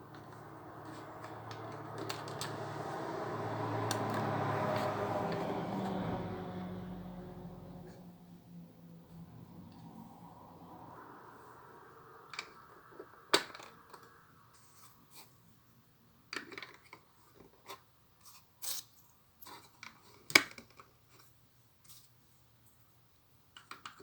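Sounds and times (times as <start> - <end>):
plastic bricks clicking and rustling: 0.1 - 2.5, 16.3 - 17.6, 23.6 - 24.0.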